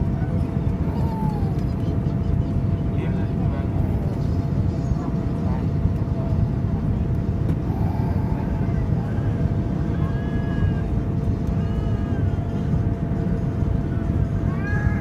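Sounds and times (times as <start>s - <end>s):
airliner engines and airflow rumble: 0.0s - 15.0s
faint steady hum: 0.0s - 15.0s.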